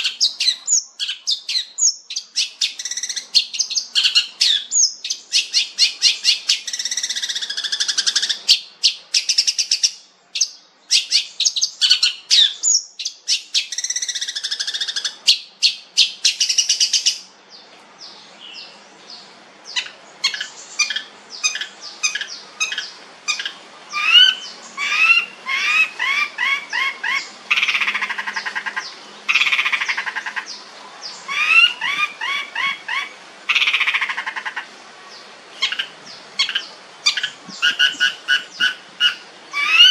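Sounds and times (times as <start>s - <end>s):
shrike singing: 0.0s - 39.9s.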